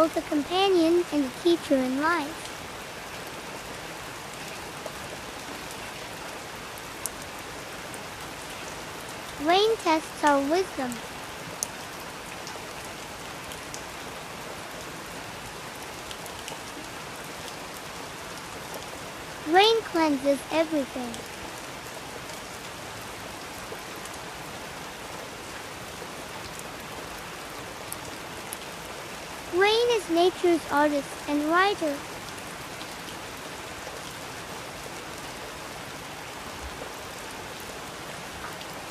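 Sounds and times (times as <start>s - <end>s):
raindrops ticking: 0.0s - 2.6s, 9.2s - 11.0s
steady rain hiss: 0.0s - 38.9s.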